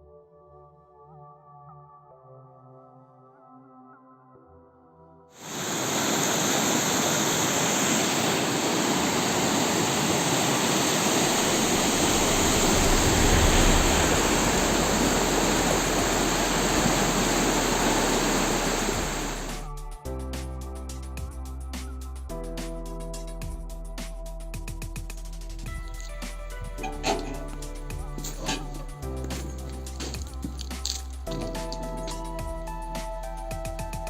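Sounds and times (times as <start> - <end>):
music: 0.0 - 5.4, 11.4 - 34.0
flowing water rushing: 5.4 - 19.7, 26.8 - 32.3.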